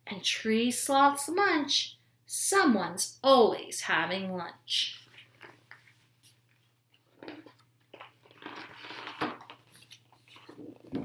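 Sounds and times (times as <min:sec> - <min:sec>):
book pages rustling: 0:05.0 - 0:07.6, 0:08.4 - 0:11.0.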